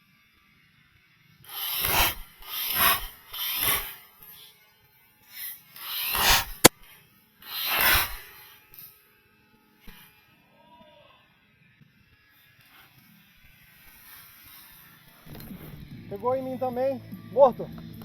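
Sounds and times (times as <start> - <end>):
sharp click: 1.5 - 4.0, 5.8 - 6.7, 7.5 - 8.3
rubbing against camera: 1.5 - 4.4, 5.3 - 6.8, 7.5 - 8.4.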